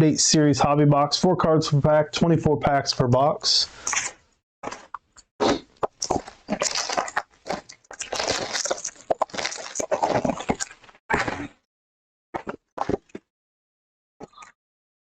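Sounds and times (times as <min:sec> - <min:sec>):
plastic wrap crinkling and tearing: 0:06.0 - 0:11.0.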